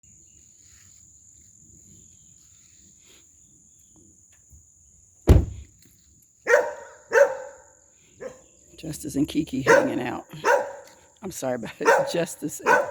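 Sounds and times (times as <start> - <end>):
loud thump: 5.3 - 5.7
dog barking: 6.5 - 8.5, 9.6 - 11.0, 11.8 - 12.9.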